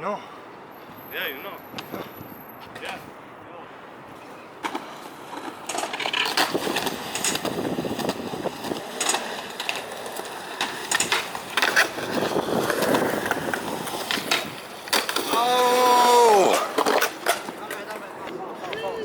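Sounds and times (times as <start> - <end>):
skateboard wheels rumbling: 4.2 - 19.0
skateboard clacks: 4.6 - 19.0.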